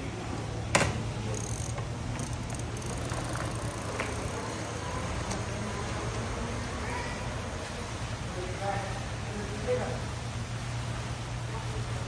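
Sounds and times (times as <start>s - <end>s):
electric bike hum and rushing: 1.3s - 7.3s.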